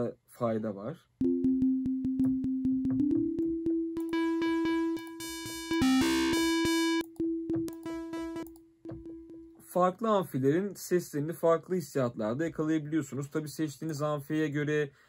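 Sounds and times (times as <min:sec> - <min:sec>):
distorted synth tone repeated notes: 0:01.2 - 0:09.6.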